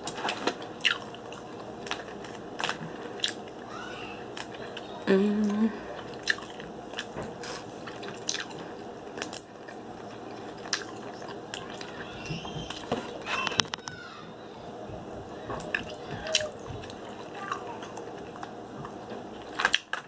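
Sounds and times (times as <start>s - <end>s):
chewing: 0.0s - 5.0s, 5.8s - 13.7s, 15.5s - 20.0s
person humming: 5.1s - 5.8s
crab shells cracking: 19.4s - 20.0s.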